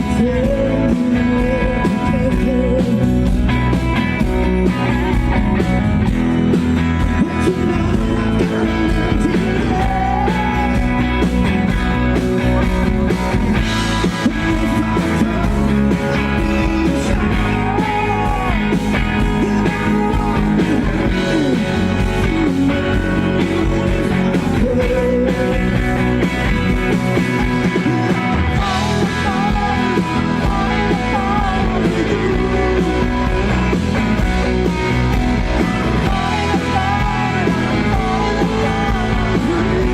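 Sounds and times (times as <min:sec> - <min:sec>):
person singing: 0:00.0 - 0:03.6, 0:06.8 - 0:39.9
electric guitar: 0:00.0 - 0:39.9
live rock band playing: 0:00.0 - 0:39.9.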